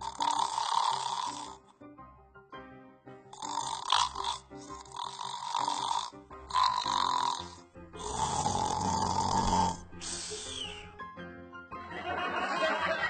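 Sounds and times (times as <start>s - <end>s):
snore-like rasping: 0.0s - 1.7s, 3.4s - 10.8s
background music: 0.0s - 13.0s.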